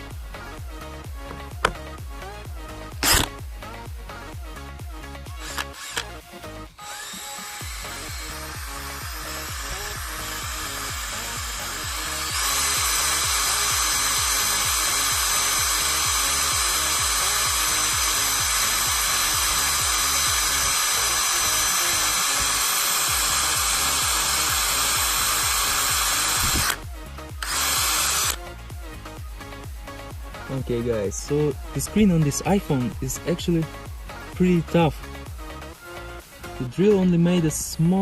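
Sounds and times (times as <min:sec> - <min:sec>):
background music with steady beat: 0:00.0 - 0:38.0
cordless drill grinding into glass: 0:03.0 - 0:03.4, 0:05.3 - 0:06.2, 0:06.8 - 0:26.8, 0:27.4 - 0:28.4.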